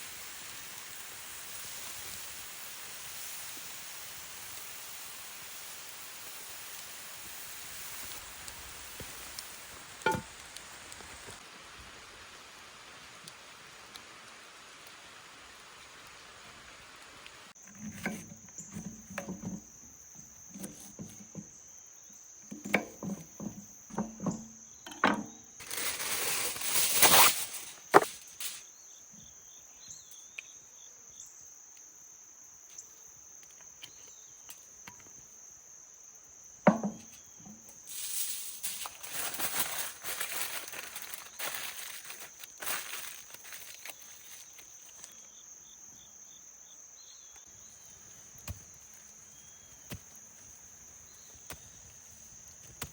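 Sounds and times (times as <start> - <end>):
insects trilling: 0.0 - 11.5, 17.4 - 52.9
hissing noise: 25.6 - 28.7.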